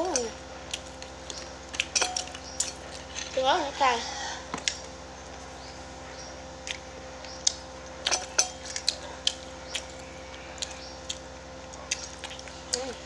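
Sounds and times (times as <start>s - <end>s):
utensils tapping on a plate: 0.0s - 0.4s, 1.3s - 3.3s, 8.1s - 10.0s
faint steady hum: 0.0s - 13.0s.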